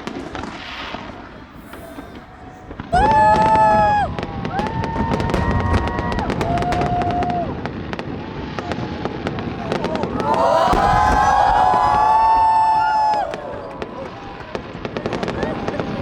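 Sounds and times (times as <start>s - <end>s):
fireworks crackling and popping: 0.0s - 16.0s
crowd whooping and cheering: 1.6s - 7.8s, 9.5s - 16.0s.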